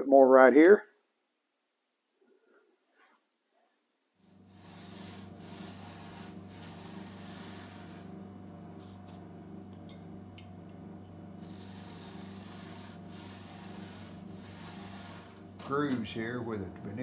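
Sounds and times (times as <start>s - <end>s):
low steady hum: 4.2s - 17.0s.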